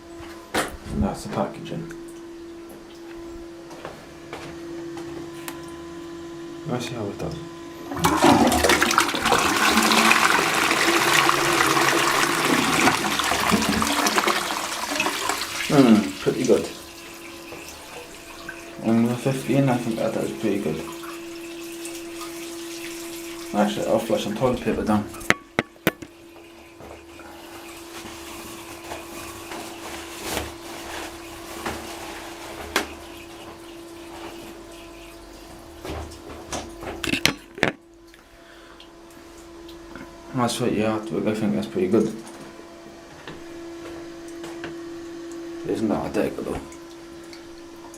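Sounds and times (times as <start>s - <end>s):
toilet flushing: 7.2s - 37.8s, 40.4s - 47.9s.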